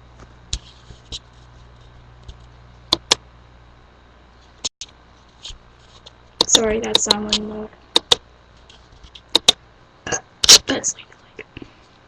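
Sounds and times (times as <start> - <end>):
steady low hum: 0.0 - 12.0
sharp clicks and taps: 2.2 - 3.2, 6.4 - 8.2, 9.1 - 9.6.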